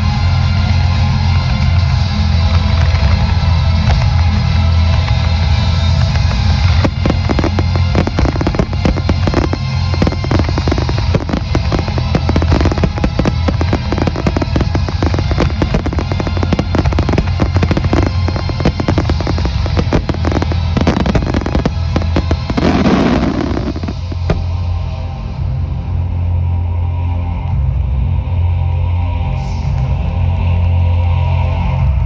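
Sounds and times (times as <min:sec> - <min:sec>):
music playing: 0:00.2 - 0:25.9
fireworks bangs and crackles: 0:01.4 - 0:24.8.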